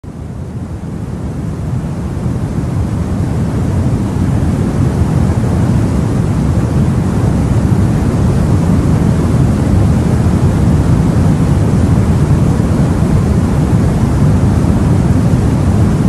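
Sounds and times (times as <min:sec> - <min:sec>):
low rumble of sea: 0:00.0 - 0:16.0
wind: 0:00.1 - 0:16.0.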